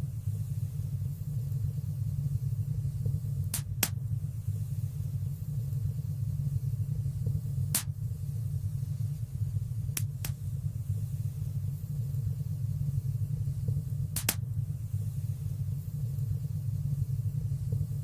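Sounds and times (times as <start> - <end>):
fire crackling pops: 3.0 - 4.3, 7.2 - 8.3, 9.8 - 11.0, 13.6 - 14.8.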